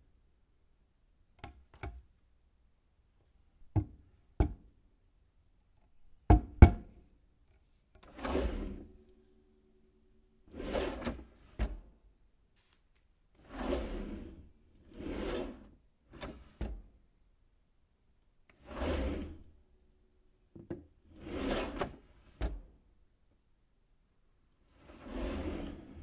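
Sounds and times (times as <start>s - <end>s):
wooden drawer sliding: 8.0s - 8.9s, 10.5s - 11.9s, 13.4s - 16.9s, 18.5s - 19.5s, 21.0s - 22.6s, 24.7s - 26.0s.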